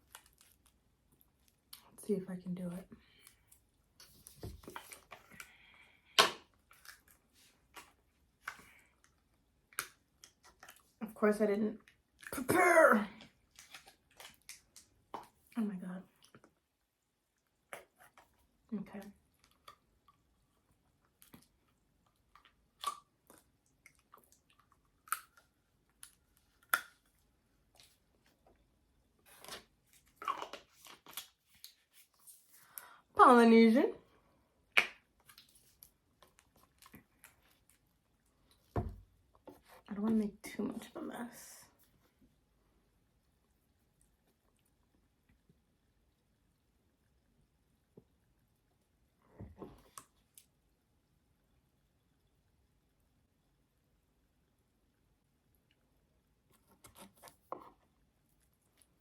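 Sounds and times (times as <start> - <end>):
handling knocks and rustles: 4.1 - 5.3.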